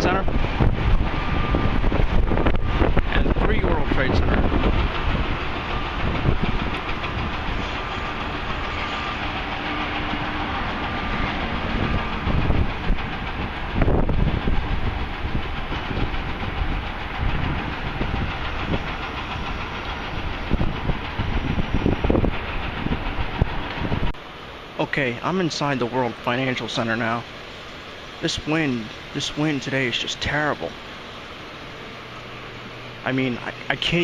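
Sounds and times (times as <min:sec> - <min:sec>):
wind buffeting microphone: 0:00.0 - 0:24.2.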